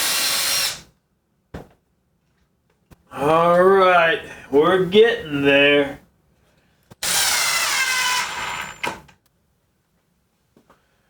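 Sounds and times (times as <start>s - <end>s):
power drill driving screw: 0.0s - 0.9s, 6.9s - 9.2s.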